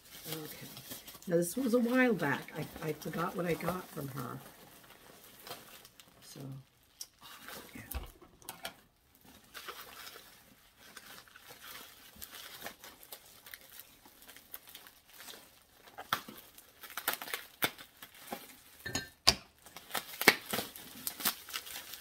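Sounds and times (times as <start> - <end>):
packaging crinkling and tearing: 0.0 - 18.9, 19.5 - 22.0.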